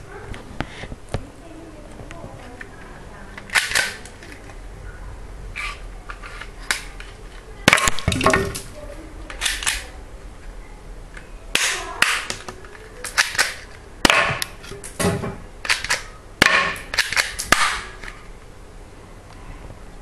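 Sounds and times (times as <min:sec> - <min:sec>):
airsoft pistol snaps and clicks: 0:15.6 - 0:17.8.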